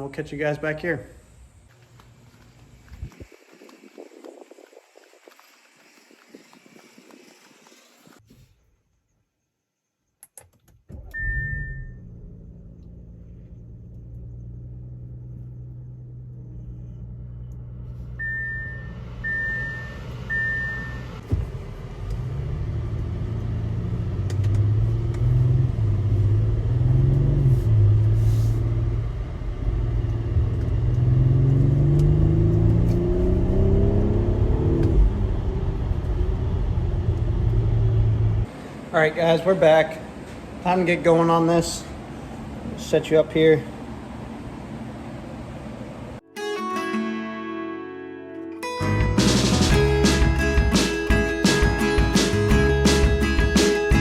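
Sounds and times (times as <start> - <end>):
car accelerating through gears: 11.0 - 38.5
car engine running: 11.0 - 38.5, 49.1 - 54.0.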